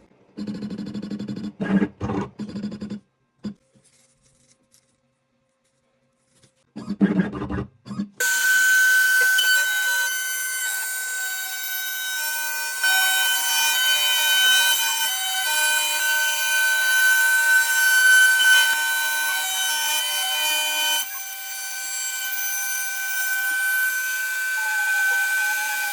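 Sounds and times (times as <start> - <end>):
spindle whining: 7.9 - 22.4.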